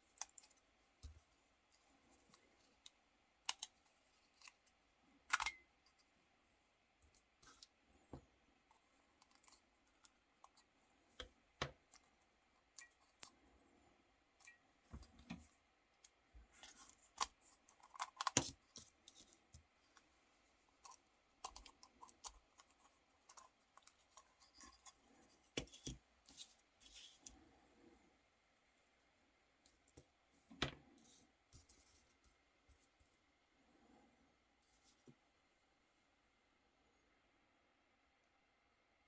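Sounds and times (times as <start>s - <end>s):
plastic phone parts clicking: 16.8s - 19.4s.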